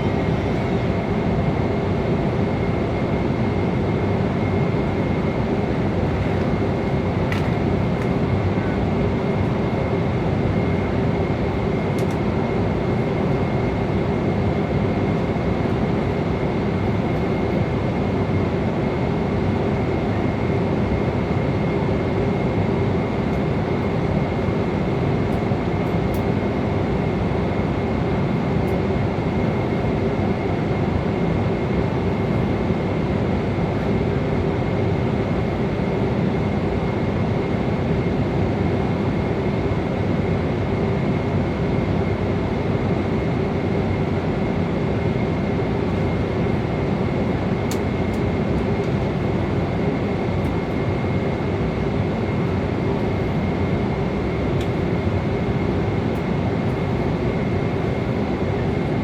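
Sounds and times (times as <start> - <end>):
airliner cabin noise: 0.0 - 59.0.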